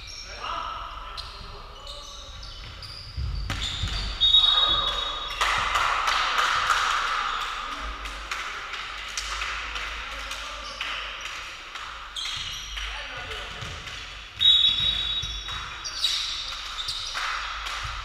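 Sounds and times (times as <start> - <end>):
whistle blast: 3.7 - 5.4, 14.4 - 15.4.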